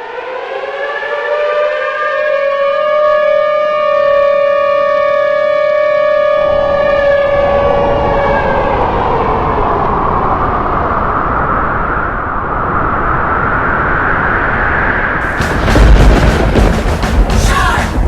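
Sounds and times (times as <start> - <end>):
tornado wind roaring: 6.4 - 18.0.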